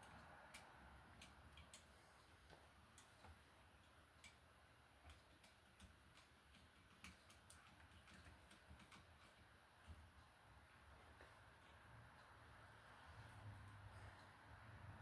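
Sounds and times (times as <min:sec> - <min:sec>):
faint wire clicks: 0:00.0 - 0:10.4.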